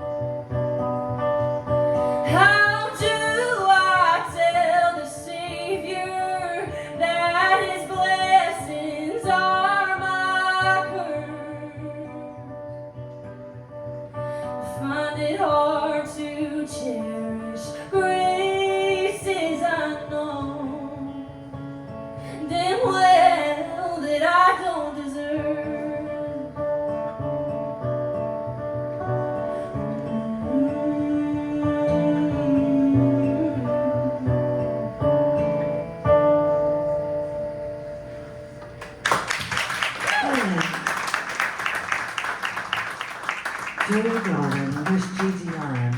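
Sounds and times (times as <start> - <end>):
acoustic guitar: 0.0 - 45.9
woman singing: 2.2 - 12.6, 14.6 - 21.4, 22.3 - 26.7, 29.8 - 35.4.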